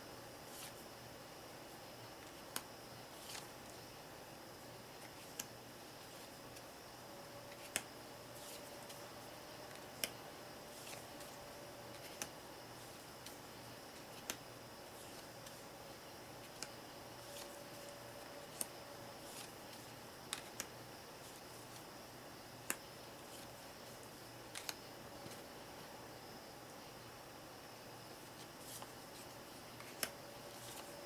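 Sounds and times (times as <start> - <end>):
faint steady hiss: 0.0 - 31.0
playing cards snapping: 7.5 - 7.9, 9.7 - 10.2, 11.9 - 12.4, 14.2 - 14.4, 20.3 - 20.8, 24.5 - 25.4, 29.8 - 30.9.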